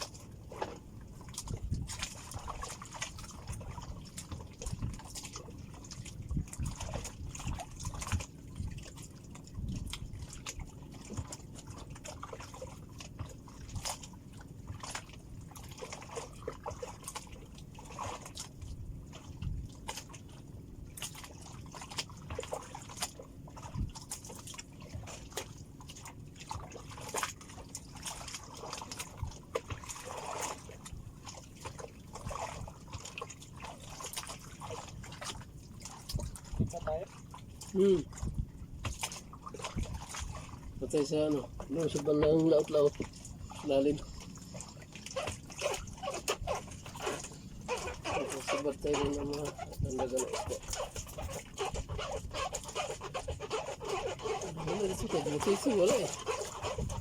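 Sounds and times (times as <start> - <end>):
water splashes and drips: 0.0 - 57.0
waves lapping against boat hull: 0.0 - 57.0.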